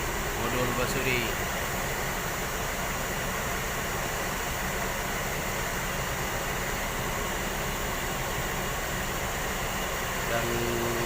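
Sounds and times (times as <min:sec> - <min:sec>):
steady mechanical hum: 0:00.0 - 0:11.0.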